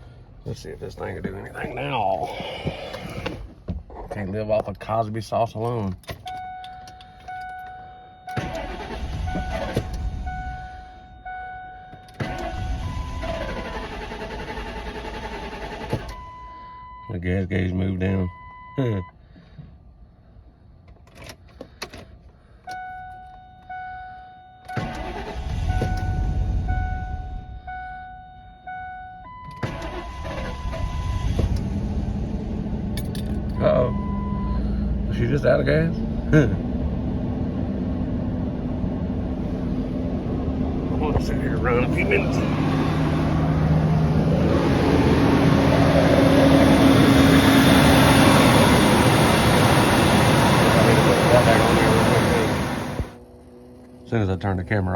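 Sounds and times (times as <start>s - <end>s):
car engine cranking and running: 5.6s - 11.0s, 12.0s - 16.4s, 24.6s - 27.8s, 29.3s - 54.9s.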